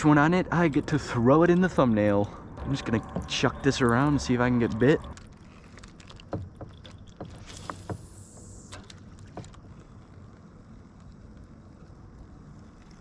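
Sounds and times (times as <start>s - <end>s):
handling noise: 2.3s - 10.1s
fishing line hissing out: 7.4s - 9.9s.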